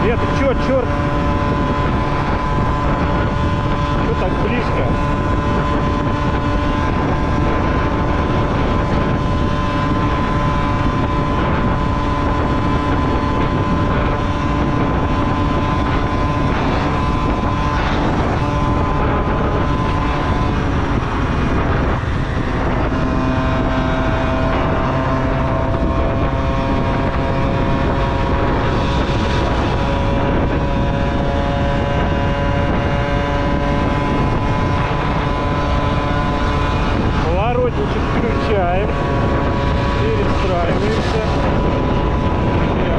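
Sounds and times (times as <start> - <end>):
moped engine running: 0.0 - 42.9
wind on microphone: 0.0 - 42.9.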